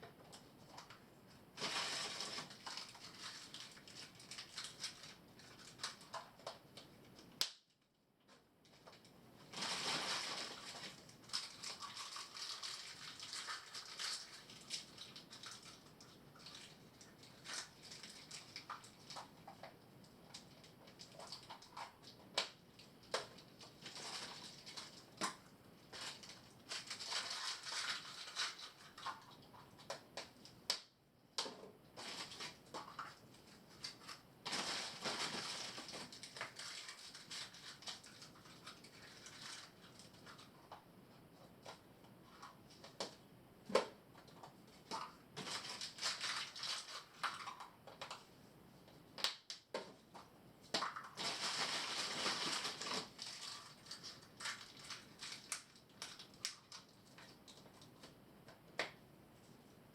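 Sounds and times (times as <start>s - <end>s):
rustling and crunching: 1.6s - 6.4s, 8.8s - 15.8s, 16.4s - 30.6s, 31.9s - 43.0s, 43.6s - 48.2s, 49.8s - 58.2s.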